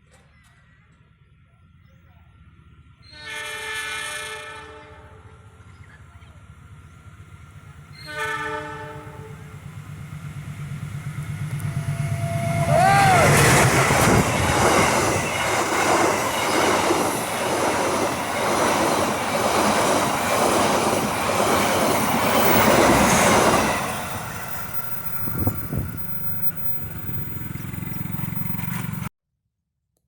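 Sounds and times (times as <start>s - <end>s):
train wheels clattering: 9.7s - 29.1s.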